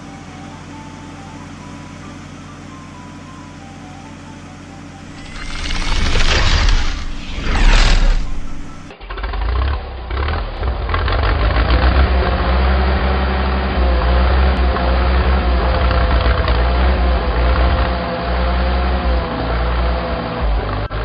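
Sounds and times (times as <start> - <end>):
mid-pitched whine: 0.0 - 8.9.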